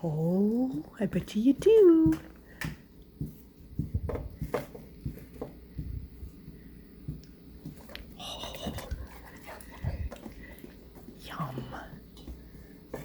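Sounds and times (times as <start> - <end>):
watermelon being chewed: 7.1 - 11.2.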